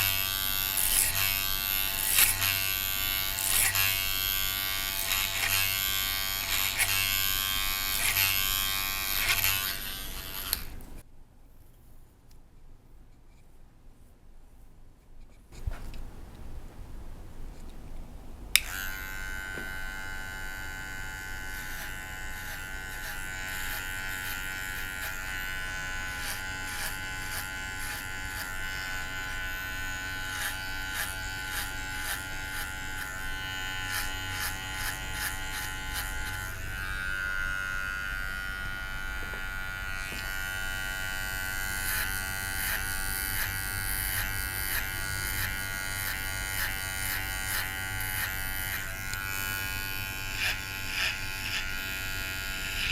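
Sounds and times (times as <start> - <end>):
hair clippers buzzing: 0.0 - 11.0, 18.5 - 52.9
hair clippers switch click: 9.2 - 10.8, 18.6 - 19.8.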